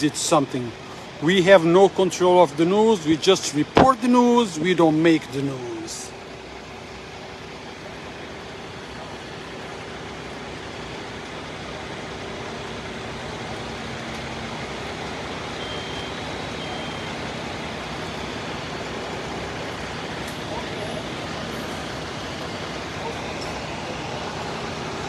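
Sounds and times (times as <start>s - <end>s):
running machinery: 0.0s - 25.0s
street traffic: 0.0s - 25.0s
short high beeps: 15.6s - 17.1s.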